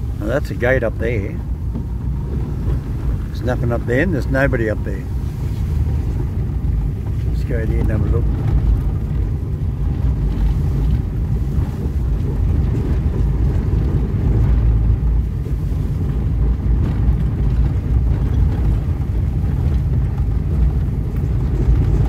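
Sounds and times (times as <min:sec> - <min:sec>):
car road and engine rumble: 0:00.0 - 0:22.0.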